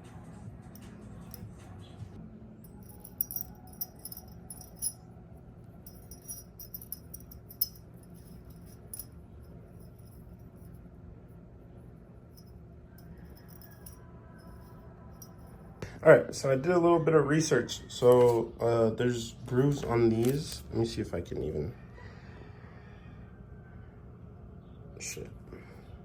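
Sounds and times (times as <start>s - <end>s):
low steady hum: 0.0s - 22.5s
small metal parts clinking: 2.7s - 5.0s, 5.8s - 10.8s, 12.4s - 15.6s.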